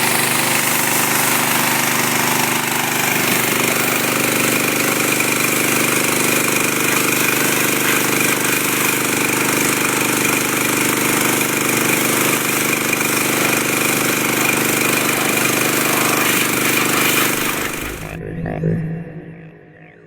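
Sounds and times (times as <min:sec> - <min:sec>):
bright hiss of spray: 0:00.0 - 0:09.0
pressure washer engine running: 0:00.0 - 0:18.2.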